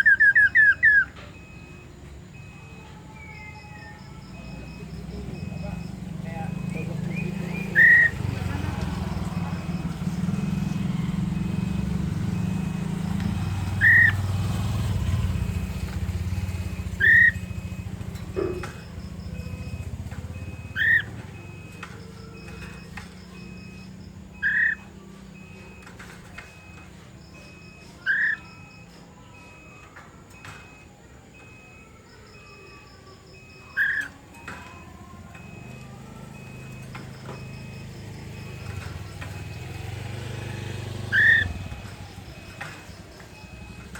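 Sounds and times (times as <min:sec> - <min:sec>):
bird whistled calls: 0:00.0 - 0:01.2, 0:06.7 - 0:08.2, 0:13.7 - 0:14.3, 0:16.9 - 0:17.5, 0:20.7 - 0:21.1, 0:24.4 - 0:24.9, 0:28.0 - 0:28.6, 0:41.0 - 0:41.6.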